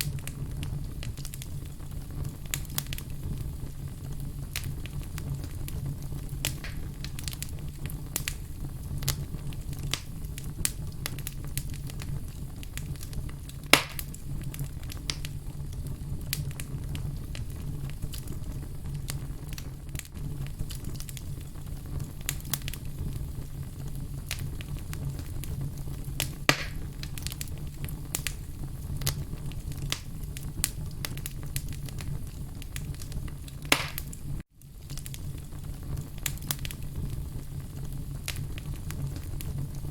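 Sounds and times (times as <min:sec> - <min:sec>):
logs burning and crackling: 0:00.0 - 0:39.9
loud wood pops: 0:06.5 - 0:06.9, 0:13.7 - 0:14.1, 0:26.5 - 0:27.3, 0:33.7 - 0:34.2.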